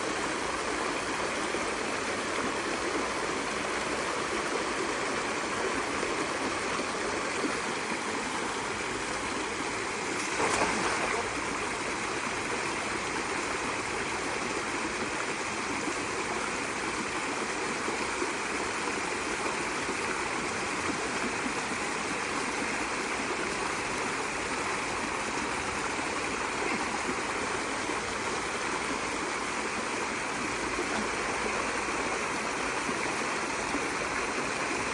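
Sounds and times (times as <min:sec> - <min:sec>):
rushing flowing water: 0:00.0 - 0:34.9.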